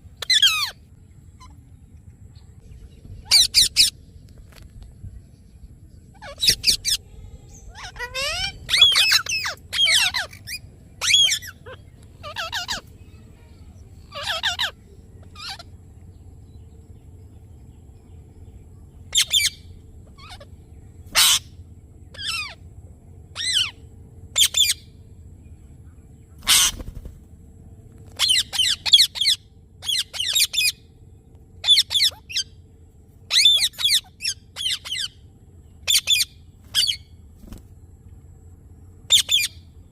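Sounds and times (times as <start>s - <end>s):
parakeet squawking and chirping: 0.2s - 0.8s, 3.2s - 3.9s, 6.1s - 13.2s, 14.1s - 15.7s, 19.1s - 20.5s, 21.1s - 21.5s, 22.1s - 22.6s, 23.4s - 23.8s, 24.4s - 24.8s, 26.4s - 27.0s, 28.2s - 30.8s, 31.6s - 32.5s, 33.3s - 35.2s, 35.8s - 37.1s, 39.1s - 39.6s.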